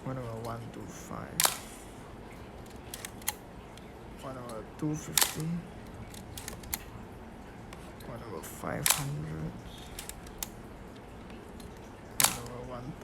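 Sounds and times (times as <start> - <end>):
camera handling clicks: 1.4 - 1.8, 2.6 - 3.4, 5.2 - 6.9, 8.8 - 9.1, 9.8 - 12.6
camera shutter click: 1.4 - 1.8, 2.7 - 3.4, 5.1 - 6.8, 8.8 - 10.6, 12.2 - 12.7.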